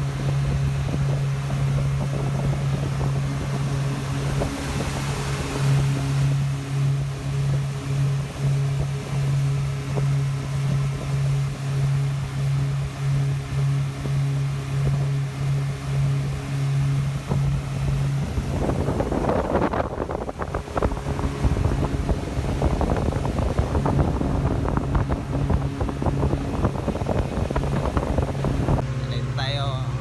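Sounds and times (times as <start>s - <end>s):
boat engine humming: 0.0s - 30.0s
rushing wind and water: 0.0s - 30.0s.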